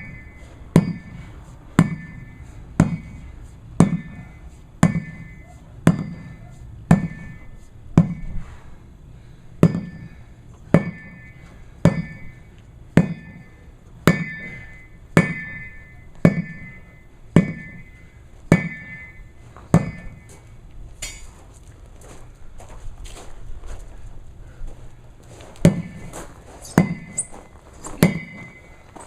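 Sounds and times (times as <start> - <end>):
sledgehammer striking a tire: 0.0 - 8.6, 9.6 - 20.4, 25.6 - 27.3, 28.0 - 28.8.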